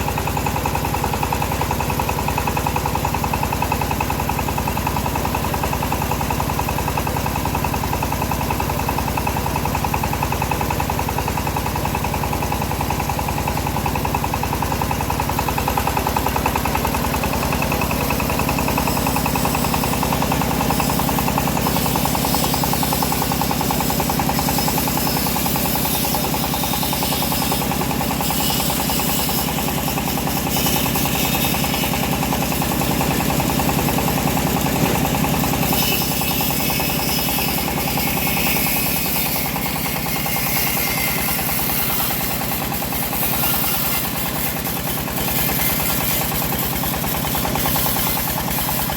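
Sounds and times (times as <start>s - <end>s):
bandsaw sawmill engine running: 0.0s - 48.9s
saw blade hissing through wood: 17.3s - 48.9s.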